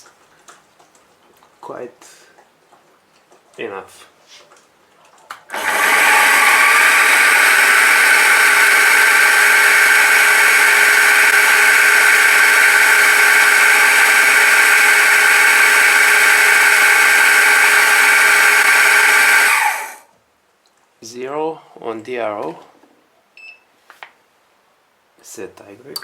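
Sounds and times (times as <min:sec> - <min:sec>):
milling machine spindle whine: 0:05.5 - 0:20.0.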